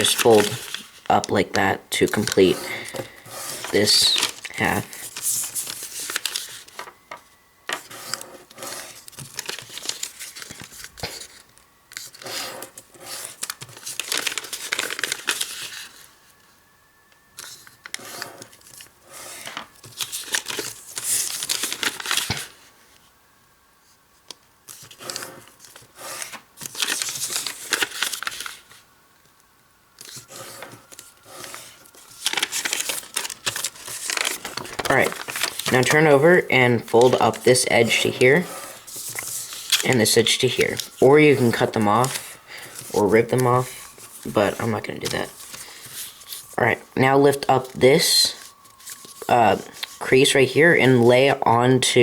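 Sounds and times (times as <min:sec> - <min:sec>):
paper crinkling and rustling: 0:00.0 - 0:23.1, 0:23.9 - 0:28.9, 0:30.0 - 0:52.0
fingernails running along paper creases: 0:02.1 - 0:06.8, 0:07.7 - 0:16.0, 0:17.4 - 0:22.4, 0:24.7 - 0:28.6, 0:30.0 - 0:46.6.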